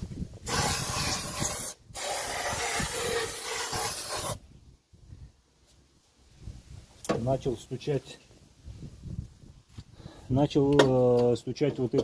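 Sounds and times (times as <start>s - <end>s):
aerosol can spraying: 0.5s - 4.4s.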